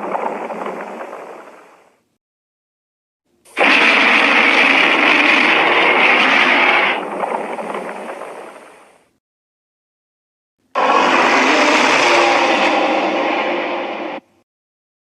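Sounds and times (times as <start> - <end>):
harsh monster roar: 3.5 - 8.6, 10.7 - 14.3.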